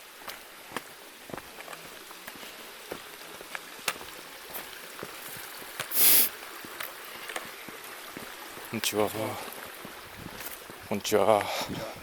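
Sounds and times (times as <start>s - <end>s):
footsteps crunching on rocky trail: 0.0s - 12.0s
running water: 0.0s - 12.0s
short loud hissing scrape: 5.9s - 6.3s.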